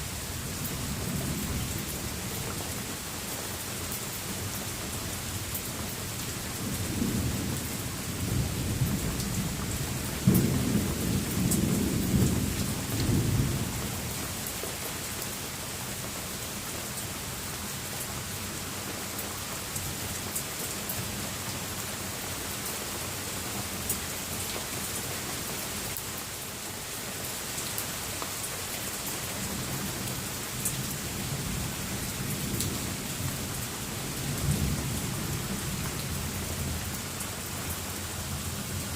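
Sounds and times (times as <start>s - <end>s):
steady rain falling: 0.0s - 38.9s
rolling thunder rumbling: 6.6s - 14.2s.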